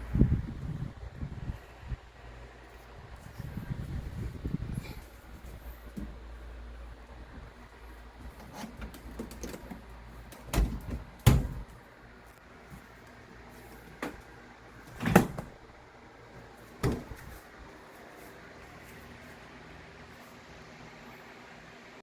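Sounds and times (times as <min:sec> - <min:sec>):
low steady rumble: 0:00.0 - 0:21.9
door-like thuds and knocks: 0:10.5 - 0:11.7, 0:16.8 - 0:17.3.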